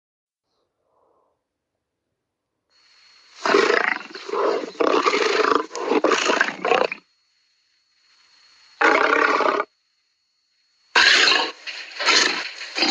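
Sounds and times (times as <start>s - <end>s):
lion roaring: 3.4s - 7.0s, 8.8s - 9.7s, 11.0s - 12.9s.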